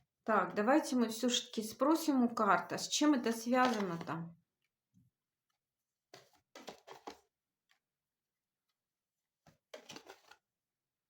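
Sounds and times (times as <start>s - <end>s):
cards being handled and drawn: 3.6s - 4.1s, 6.1s - 7.3s, 9.4s - 10.5s.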